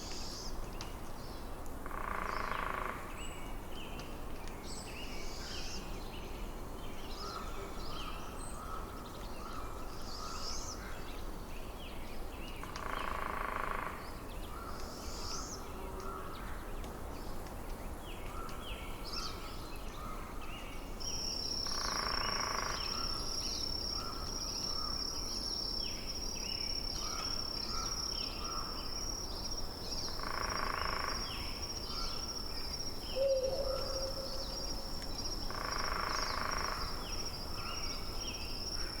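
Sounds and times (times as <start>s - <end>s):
loud bird call: 33.2s - 34.7s.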